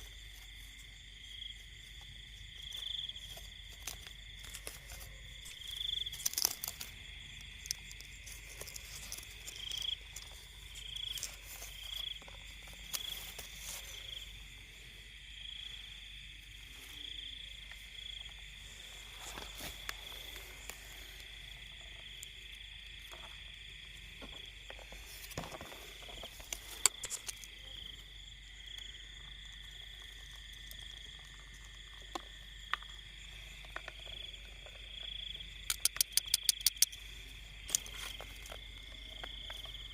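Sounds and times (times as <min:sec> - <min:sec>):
crickets trilling: 0:00.0 - 0:39.9
insect chirps: 0:00.0 - 0:39.9
clicks and rustles: 0:02.6 - 0:14.0, 0:24.2 - 0:27.6, 0:33.5 - 0:37.0.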